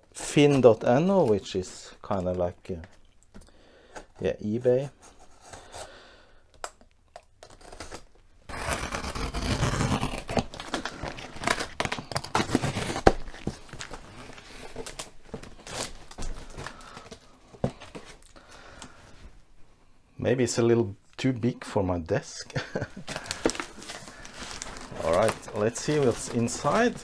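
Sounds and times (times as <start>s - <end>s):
packaging torn and crinkled: 7.2s - 17.3s, 22.6s - 27.0s.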